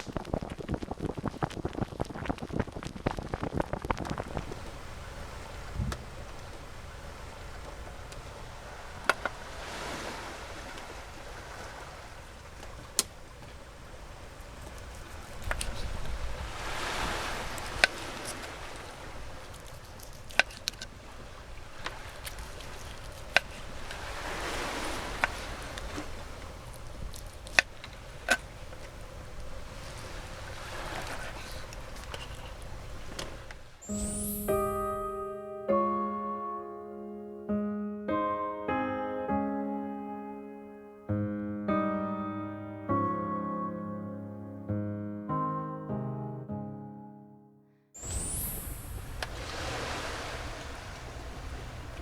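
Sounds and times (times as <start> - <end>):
wind noise: 0.0 - 35.2, 48.0 - 52.0
sea waves washing onto beach: 0.0 - 35.3, 48.0 - 52.0.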